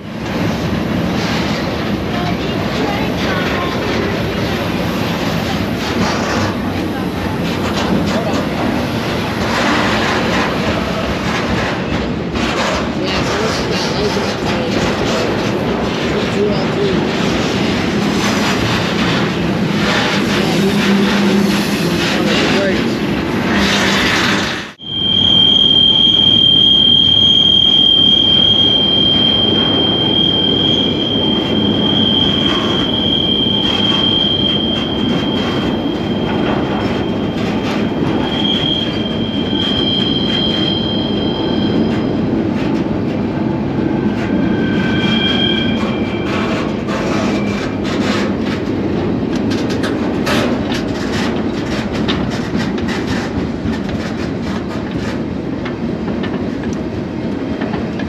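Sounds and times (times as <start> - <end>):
train wheels rumbling on rail: 0.0 - 58.0
high wheel squeal: 23.5 - 42.3, 43.9 - 48.3.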